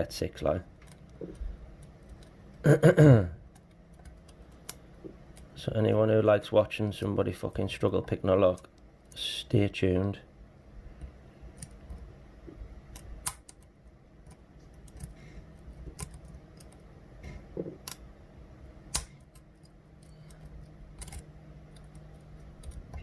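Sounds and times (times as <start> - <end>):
faint low hum: 0.0 - 23.0
lock pick clicking on pins: 12.9 - 15.2, 18.9 - 23.0.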